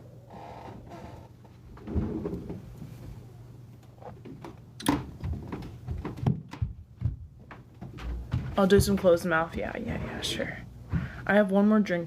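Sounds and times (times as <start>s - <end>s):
soft knocks: 4.9s - 9.2s.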